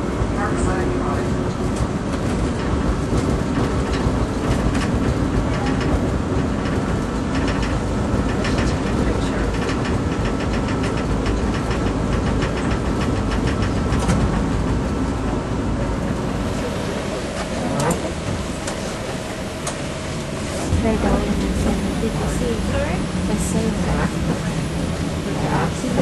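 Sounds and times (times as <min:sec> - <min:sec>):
streetcar wheels rumbling on rails: 0:00.0 - 0:26.0
clicking and rattling: 0:01.8 - 0:14.6.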